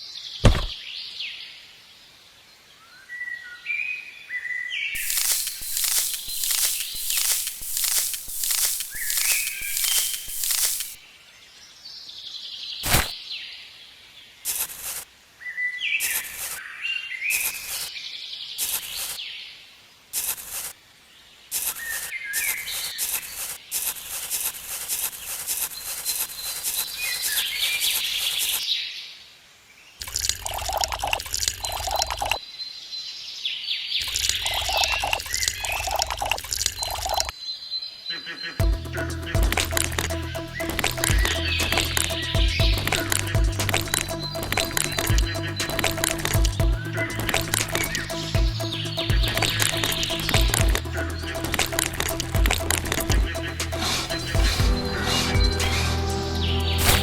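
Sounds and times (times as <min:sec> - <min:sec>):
birds chirping: 0:05.0 - 0:11.0, 0:38.1 - 0:57.0
low pulsing hum: 0:38.6 - 0:57.0.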